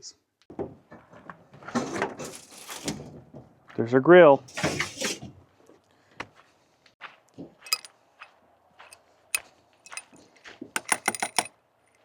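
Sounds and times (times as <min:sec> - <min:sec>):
metal grill parts clinking: 0:07.7 - 0:07.9, 0:09.9 - 0:10.1, 0:10.8 - 0:11.5.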